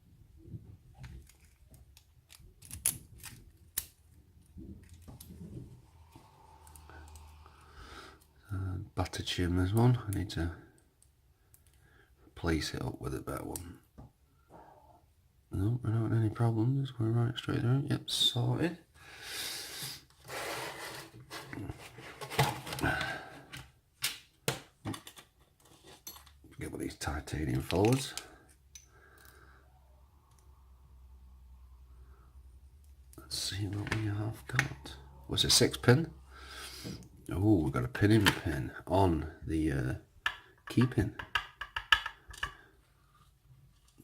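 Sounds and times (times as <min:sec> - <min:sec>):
metal lock clicks and scrapes: 0:02.3 - 0:03.9.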